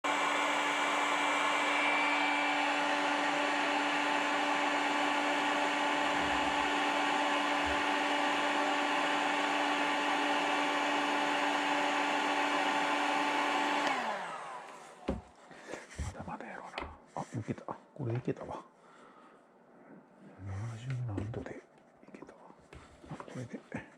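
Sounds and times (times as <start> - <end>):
heat gun blowing air: 0.1 - 15.2.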